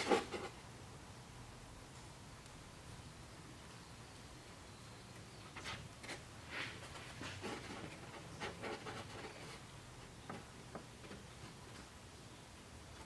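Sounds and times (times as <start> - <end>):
faint rustling: 5.4 - 12.0.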